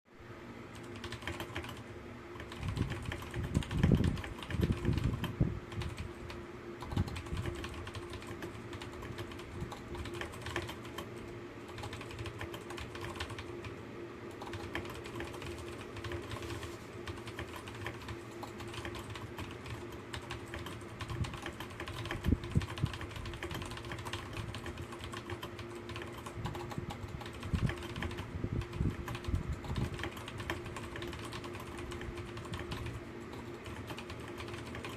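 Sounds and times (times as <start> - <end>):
faint steady hum: 0.1 - 34.9
fast typing on keyboard: 0.7 - 34.9.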